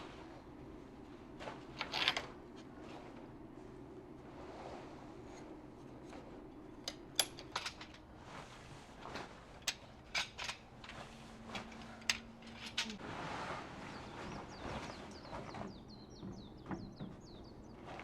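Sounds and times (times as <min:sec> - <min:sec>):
camping gear clicking and clinking: 0:01.3 - 0:03.3, 0:05.4 - 0:13.0.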